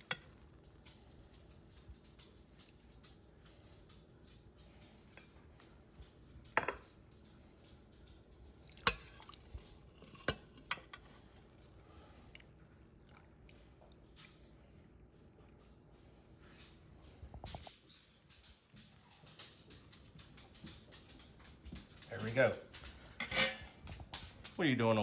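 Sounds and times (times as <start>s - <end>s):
utensil clinking against cookware: 6.6s - 6.9s, 8.7s - 11.2s, 22.1s - 23.8s.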